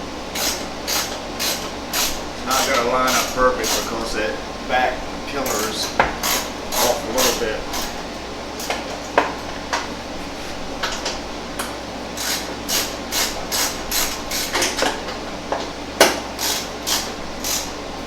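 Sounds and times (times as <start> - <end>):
hand tools clicking on metal: 0.4 - 4.2, 5.4 - 8.0, 10.8 - 17.8.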